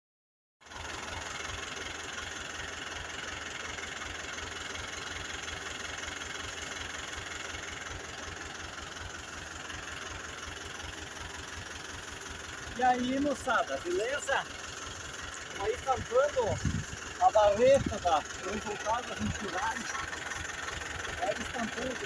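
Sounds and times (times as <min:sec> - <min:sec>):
diesel engine idling: 0:00.6 - 0:22.0.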